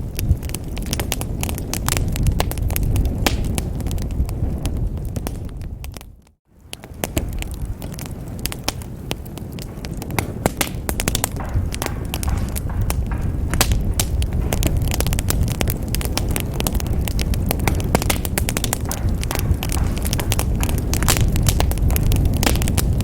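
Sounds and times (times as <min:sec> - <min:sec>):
wood bonfire crackling: 0:00.0 - 0:23.0
sharp pops and snaps: 0:00.2 - 0:03.9, 0:05.2 - 0:23.0
low rumble: 0:09.6 - 0:23.0.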